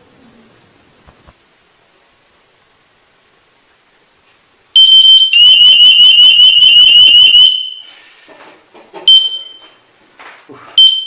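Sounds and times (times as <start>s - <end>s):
high-pitched warbling alarm: 4.8s - 7.9s.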